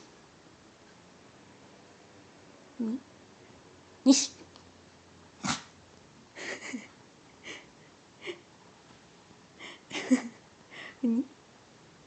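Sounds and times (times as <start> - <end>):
dog sneezing and snorting: 5.4 - 5.7.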